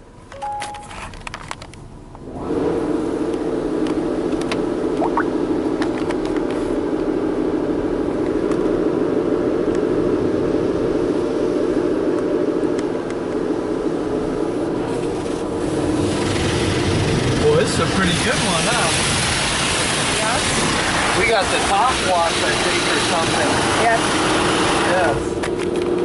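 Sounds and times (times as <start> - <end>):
car wash rushing: 6.5 - 26.0.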